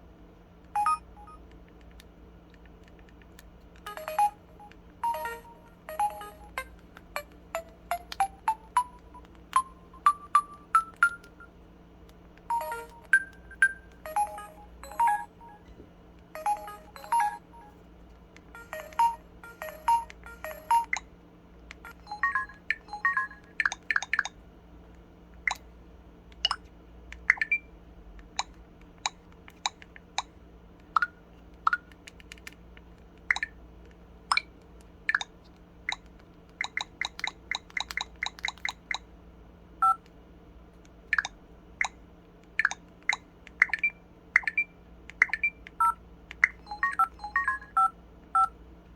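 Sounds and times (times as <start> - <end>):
phone key beeps: 0.8 - 1.4, 3.9 - 11.5, 12.5 - 15.7, 16.4 - 17.8, 18.6 - 21.1, 21.8 - 24.3, 39.8 - 40.0, 42.6 - 48.5.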